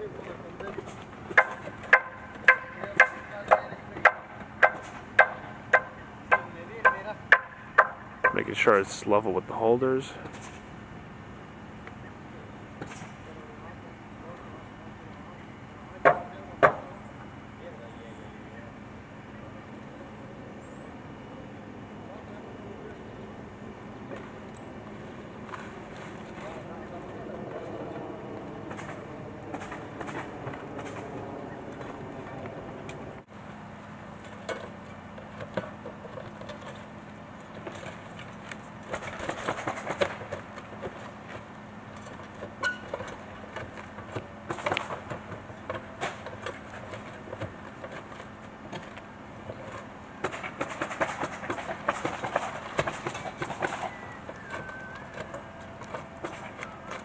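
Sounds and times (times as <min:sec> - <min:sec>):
steady low hum: 0:00.0 - 0:57.0
roofing scraping and clatter: 0:34.2 - 0:57.0.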